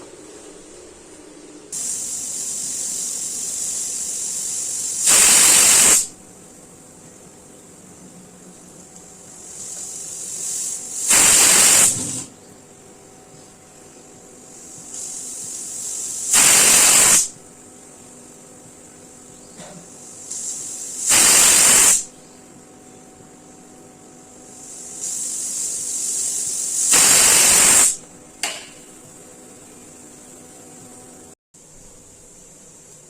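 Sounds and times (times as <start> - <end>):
steam hissing: 1.7 - 6.2, 9.3 - 12.3, 14.4 - 17.4, 19.6 - 22.1, 24.4 - 28.1
pressure cooker whistling: 1.8 - 6.1, 9.6 - 12.3, 15.0 - 17.4, 20.3 - 22.1, 24.6 - 28.0.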